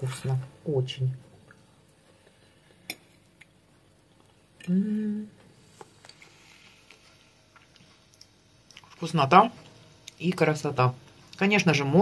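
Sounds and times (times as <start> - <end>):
woman humming mmm: 4.6 - 5.4.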